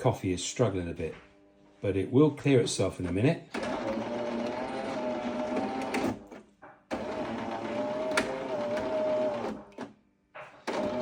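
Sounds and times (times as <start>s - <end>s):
coffee machine motor whirring: 2.5s - 9.9s, 10.5s - 11.0s.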